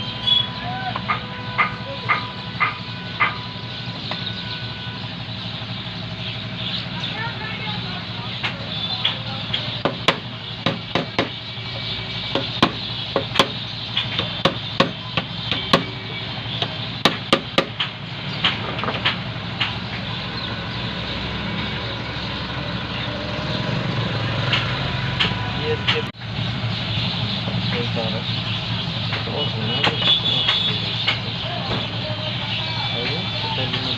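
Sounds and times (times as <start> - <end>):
hand tools knocking on metal: 8.4 - 11.4, 12.3 - 16.0.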